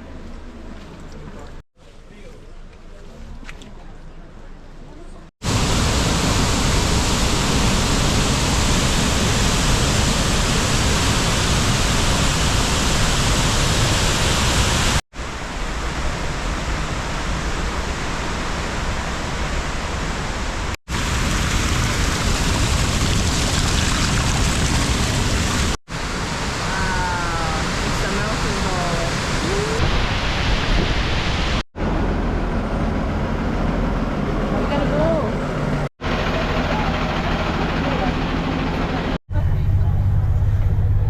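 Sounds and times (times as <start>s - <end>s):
waterfall roaring: 5.4s - 31.6s.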